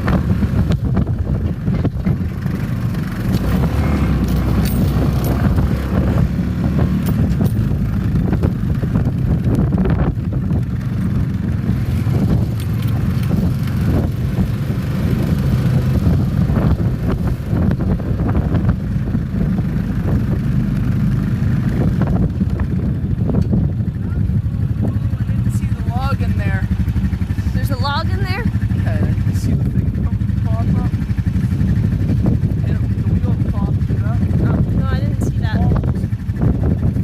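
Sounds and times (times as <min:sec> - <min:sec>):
rattles and clicks: 0:00.0 - 0:06.3, 0:06.9 - 0:18.8
atv engine running: 0:00.0 - 0:37.0
wind rumbling on microphone: 0:00.0 - 0:37.0.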